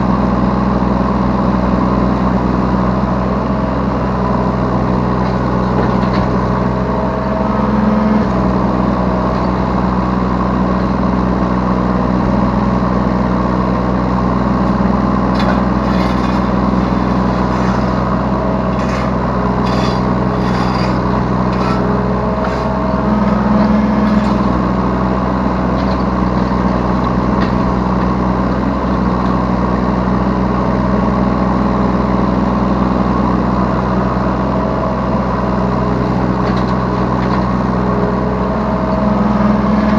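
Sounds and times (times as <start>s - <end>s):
excavator diesel engine running: 0.0s - 39.9s
metal clanks and scrapes: 14.6s - 24.7s.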